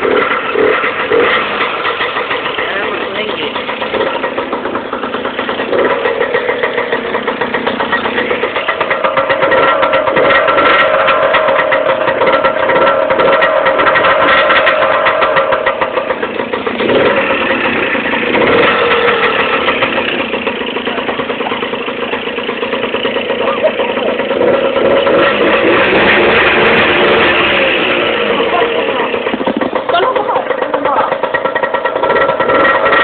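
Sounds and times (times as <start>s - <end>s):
moped two-stroke engine revving: 0.0s - 33.0s.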